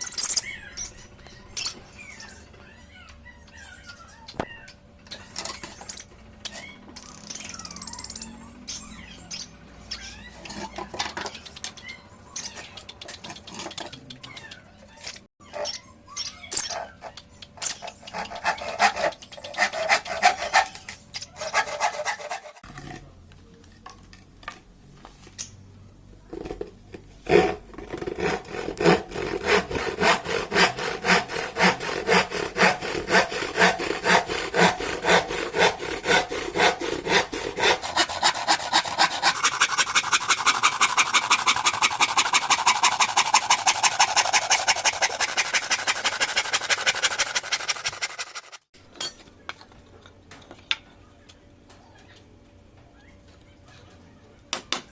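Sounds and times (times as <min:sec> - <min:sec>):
hand saw cutting wood: 0:17.8 - 0:22.6, 0:27.2 - 0:48.7.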